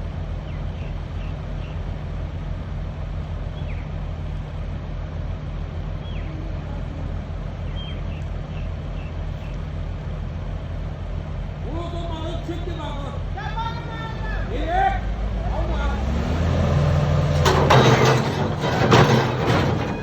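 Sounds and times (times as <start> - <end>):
truck engine drone: 0.0 - 20.0.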